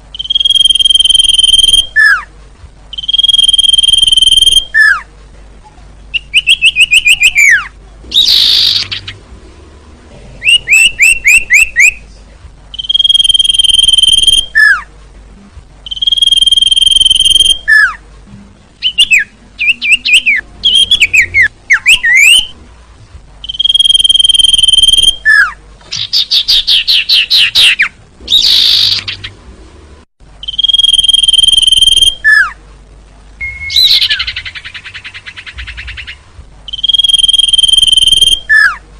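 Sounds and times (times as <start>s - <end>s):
bird whistling song: 0.1s - 2.3s, 2.9s - 5.1s, 6.1s - 9.2s, 10.4s - 12.1s, 12.7s - 14.9s, 15.8s - 18.0s, 18.8s - 22.6s, 23.4s - 29.3s, 30.4s - 32.6s, 33.4s - 38.8s.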